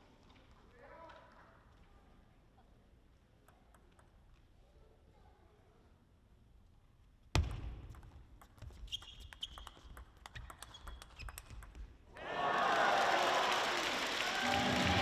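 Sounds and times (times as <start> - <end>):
table tennis ball clicks: 7.9 - 12.0
shoe squeak on floor: 8.6 - 11.7.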